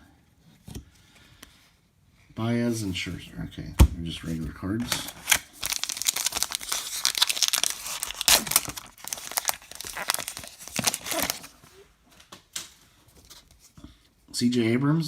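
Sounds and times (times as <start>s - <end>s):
card pack wrapper tearing and crinkling: 4.8s - 11.7s.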